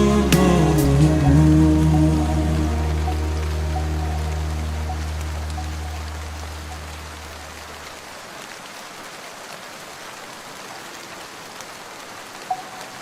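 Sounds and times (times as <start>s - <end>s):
low vocal hum: 0.0s - 5.2s
steady rain hiss: 0.0s - 13.0s.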